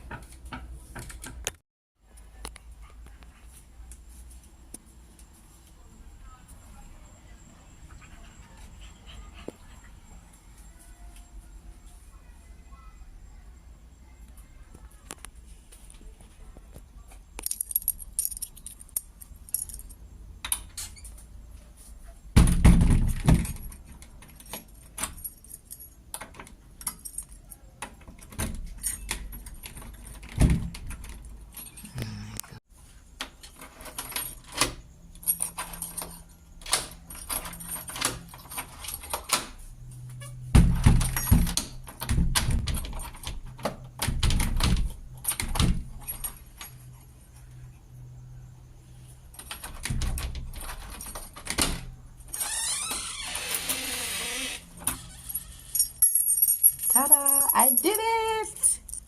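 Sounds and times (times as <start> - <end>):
metal lock parts clinking: 17.3 - 21.1, 23.1 - 31.9, 33.4 - 39.4, 40.2 - 47.0, 49.3 - 53.9, 54.8 - 59.0
heavy knocks on door: 22.4 - 23.5.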